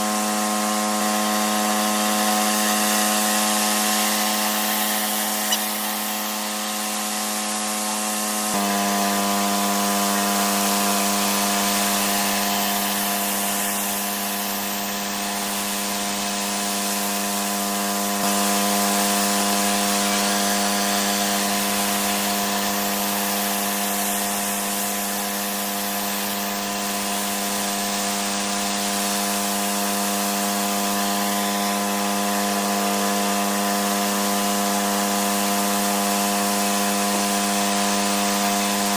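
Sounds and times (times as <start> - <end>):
high-pressure water spray hiss: 0.0 - 38.9
pressure washer hum: 0.0 - 38.9.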